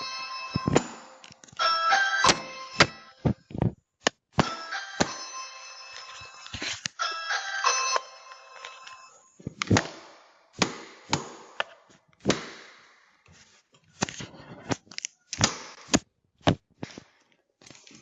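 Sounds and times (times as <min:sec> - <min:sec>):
sharp ringing bangs: 0:04.4 - 0:06.0.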